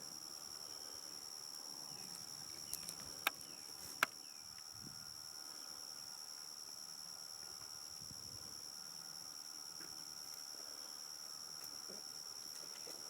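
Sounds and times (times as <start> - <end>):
insects buzzing: 0.0 - 13.0
sharp clicks: 2.7 - 4.7.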